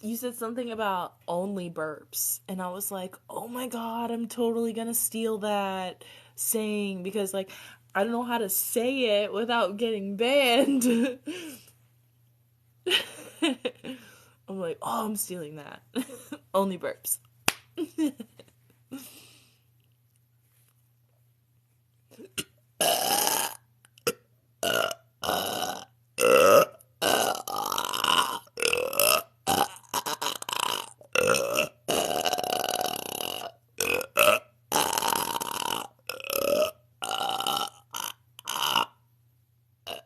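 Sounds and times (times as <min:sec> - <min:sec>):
woman burping: 0:22.1 - 0:39.0.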